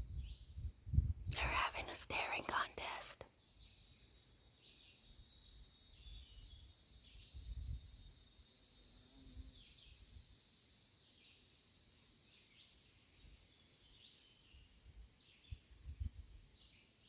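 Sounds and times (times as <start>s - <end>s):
high-pitched insect drone: 3.7s - 12.3s.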